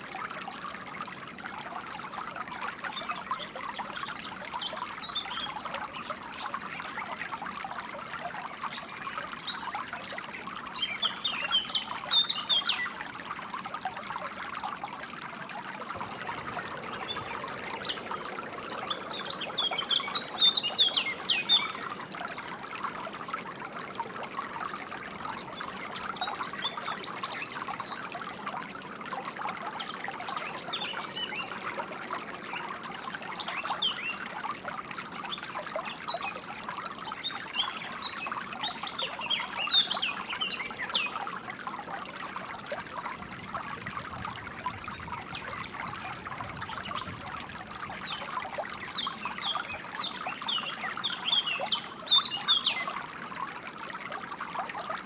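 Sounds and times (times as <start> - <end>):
stream trickling and splashing: 0.0 - 55.0
songbirds chirping: 15.6 - 28.7, 29.6 - 34.5, 47.9 - 53.0.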